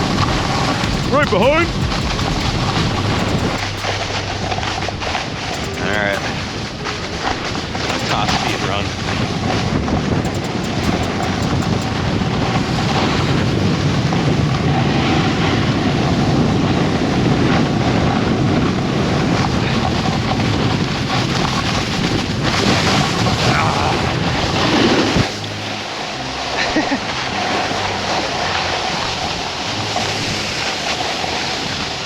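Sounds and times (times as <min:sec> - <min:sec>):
wind rushing over microphone: 0:00.0 - 0:32.0
snowboard sliding over snow: 0:12.0 - 0:25.3, 0:26.0 - 0:32.0.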